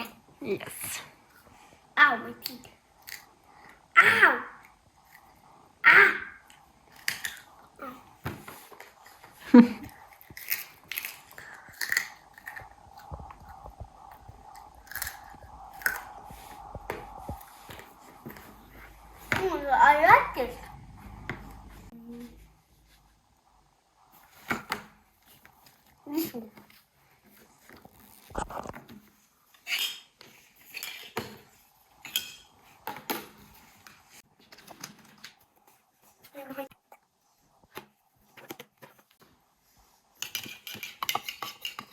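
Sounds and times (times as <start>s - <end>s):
cutlery and dishes clinking: 32.0s - 33.3s, 40.2s - 41.9s.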